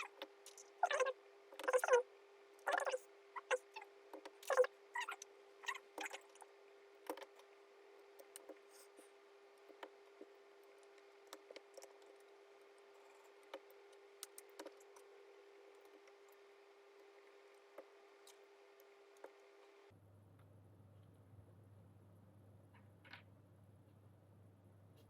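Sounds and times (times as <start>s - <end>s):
faint steady hum: 0.0s - 25.0s.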